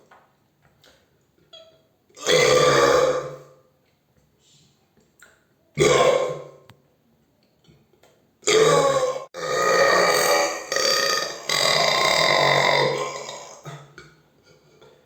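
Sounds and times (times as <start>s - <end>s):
person burping: 2.2s - 3.5s, 5.8s - 6.6s, 8.4s - 14.1s.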